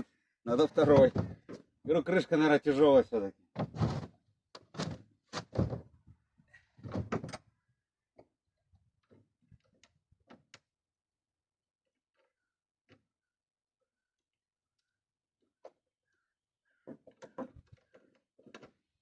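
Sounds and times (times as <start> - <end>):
plastic lid knocking and thudding: 0.8 - 1.6.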